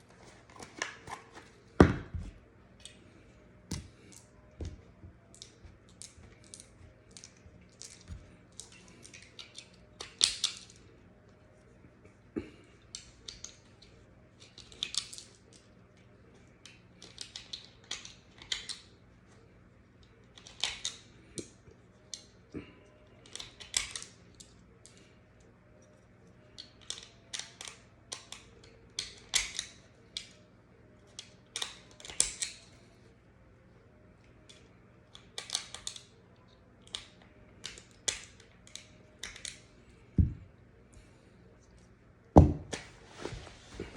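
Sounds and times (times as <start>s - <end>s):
low steady hum: 0.0s - 43.9s
pistol parts clicking and scraping: 26.6s - 30.4s, 31.1s - 32.8s, 34.4s - 36.1s, 36.8s - 39.7s.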